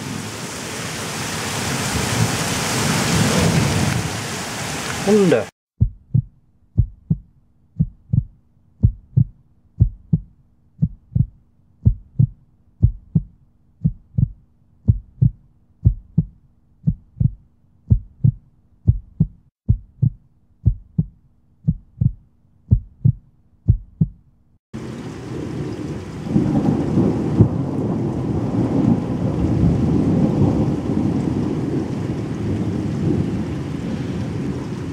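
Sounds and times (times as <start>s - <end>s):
heartbeat thumps: 5.8s - 24.3s.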